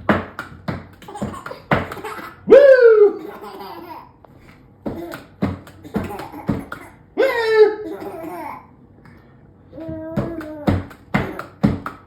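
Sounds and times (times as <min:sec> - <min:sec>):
baby laughing: 0:01.0 - 0:04.2, 0:04.9 - 0:08.7
baby squealing with laughter: 0:07.2 - 0:08.6.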